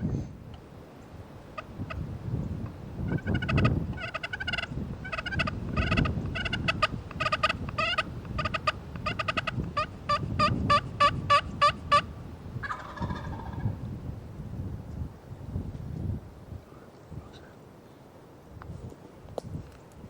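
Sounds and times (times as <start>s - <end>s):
turkey calling: 1.5s - 13.8s.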